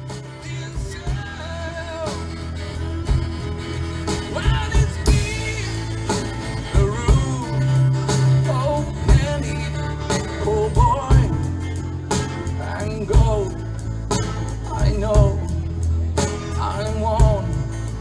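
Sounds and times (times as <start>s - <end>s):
bass line: 0.0s - 18.0s
country band playing live: 0.0s - 18.0s
drum beat: 3.0s - 9.5s.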